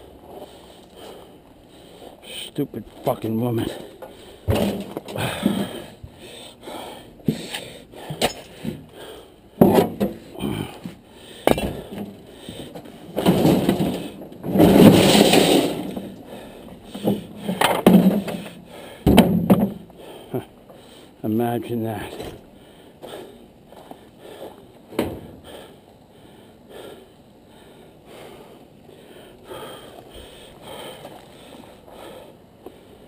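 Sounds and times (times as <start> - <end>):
junk clanking and crashing: 3.7 - 5.9, 9.6 - 19.9.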